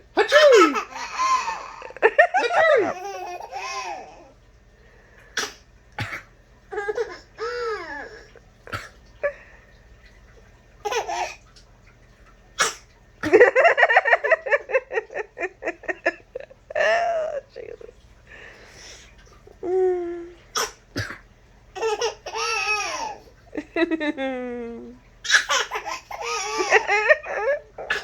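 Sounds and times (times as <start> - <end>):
hearty laughter: 13.3 - 17.4.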